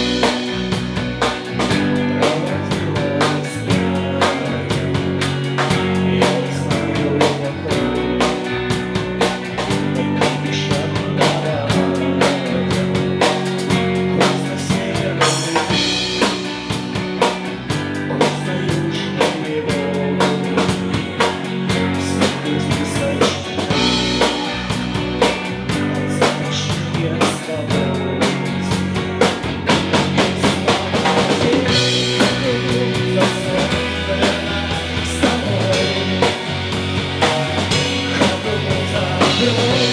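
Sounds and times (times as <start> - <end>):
bass notes: 0.0 - 39.9
drum kit: 0.0 - 39.9
rock band playing: 0.0 - 39.9.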